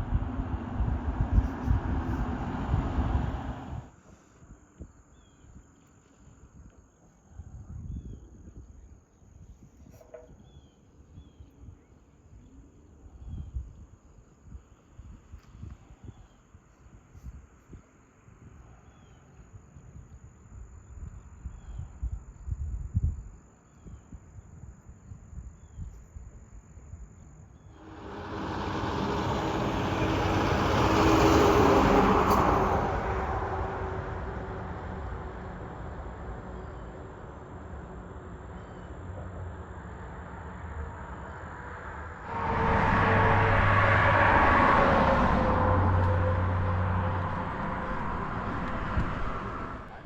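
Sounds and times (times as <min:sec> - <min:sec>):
road vehicles passing: 0:00.0 - 0:03.9, 0:27.8 - 0:50.0.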